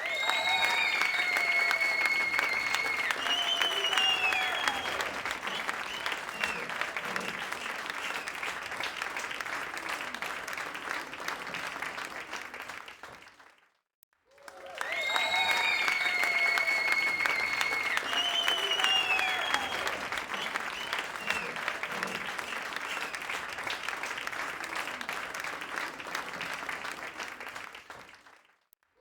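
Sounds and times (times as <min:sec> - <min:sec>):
long high whistle: 0:00.0 - 0:06.6, 0:14.8 - 0:21.6
crowd clapping and cheering: 0:00.0 - 0:29.0.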